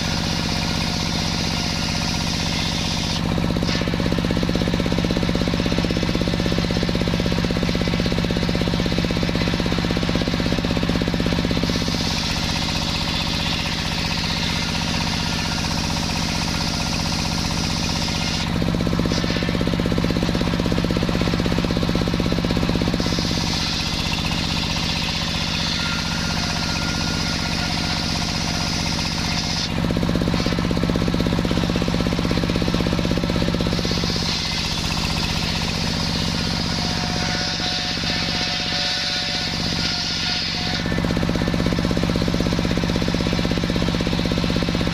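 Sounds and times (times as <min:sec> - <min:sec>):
sawmill saw cutting log: 0:00.0 - 0:44.9.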